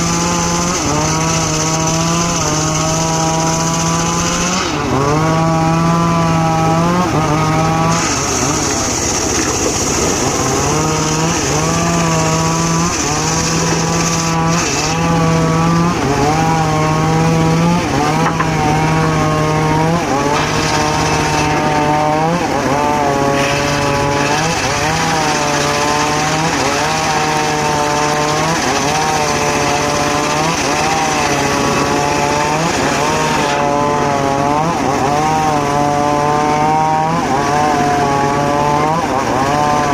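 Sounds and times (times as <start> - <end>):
circular saw cutting wood: 0.0 - 39.9.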